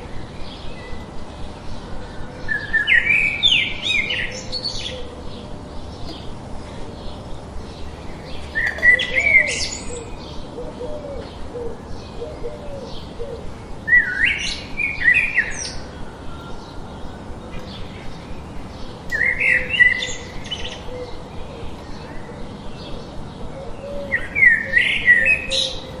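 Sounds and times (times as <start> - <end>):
bird song phrases: 0.0 - 26.0
birds chirping: 0.0 - 26.0.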